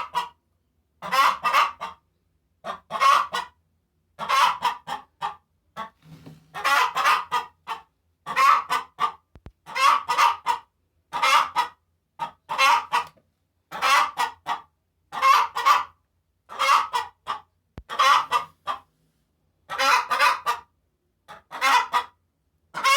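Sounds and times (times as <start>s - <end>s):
hen cackling: 1.0s - 2.0s, 2.7s - 3.5s, 4.2s - 13.1s, 13.7s - 18.8s, 19.7s - 20.7s, 21.3s - 22.2s.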